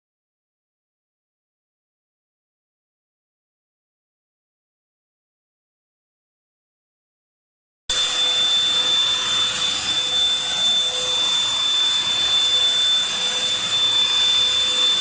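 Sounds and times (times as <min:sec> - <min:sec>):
vacuum cleaner motor running: 0:07.9 - 0:15.0.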